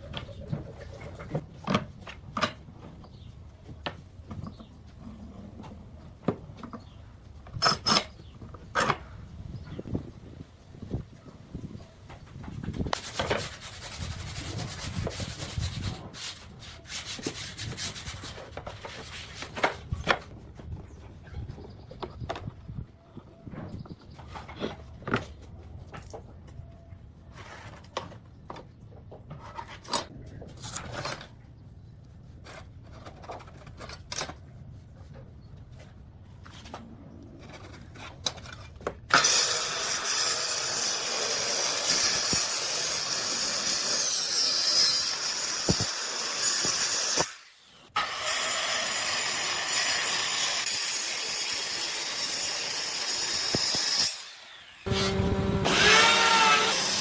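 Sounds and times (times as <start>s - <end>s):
power tool working wood: 52.8s - 57.0s
motor whine shifting in pitch: 54.6s - 56.8s.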